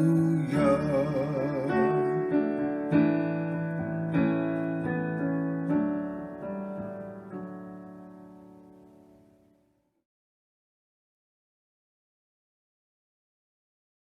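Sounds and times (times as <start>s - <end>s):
piano chords: 0.0s - 9.7s.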